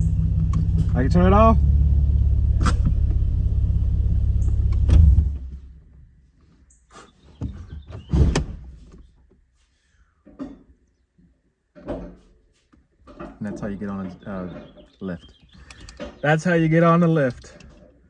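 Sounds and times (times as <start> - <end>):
car engine idling: 0.0 - 6.0.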